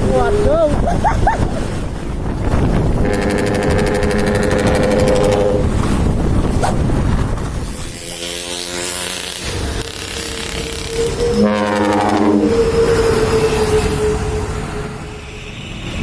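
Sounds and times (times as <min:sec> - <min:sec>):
truck passing: 0:01.5 - 0:16.0
truck air horn blasts: 0:03.0 - 0:05.7, 0:09.8 - 0:15.9.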